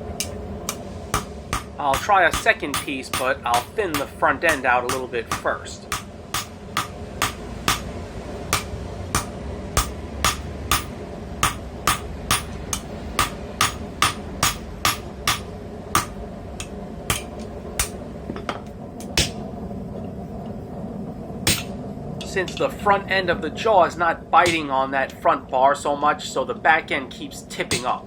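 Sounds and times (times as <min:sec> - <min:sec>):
steady background drone: 0:00.0 - 0:28.0
hammer striking steel on anvil: 0:00.1 - 0:19.4, 0:21.5 - 0:21.8, 0:24.4 - 0:24.7, 0:27.7 - 0:28.0.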